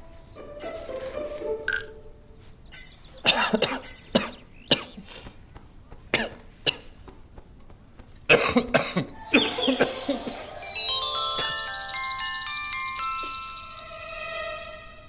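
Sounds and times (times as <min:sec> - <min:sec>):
man coughing: 0:03.2 - 0:05.0, 0:06.1 - 0:06.9, 0:08.3 - 0:09.9.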